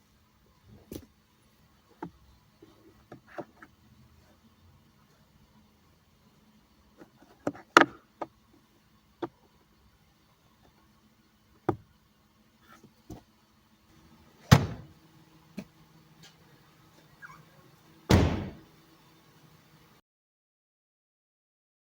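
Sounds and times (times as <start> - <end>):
car door heavy slams: 14.4 - 14.9, 18.1 - 18.7.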